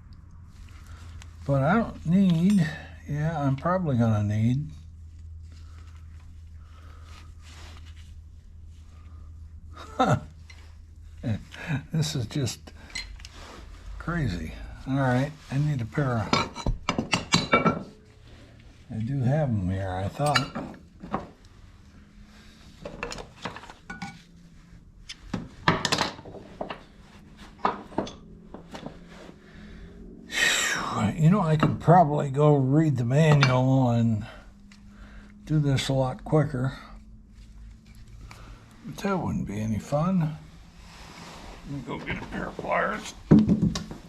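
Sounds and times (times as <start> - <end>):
low steady hum: 0.0 - 44.0
metal hand tools clinking: 2.3 - 2.9.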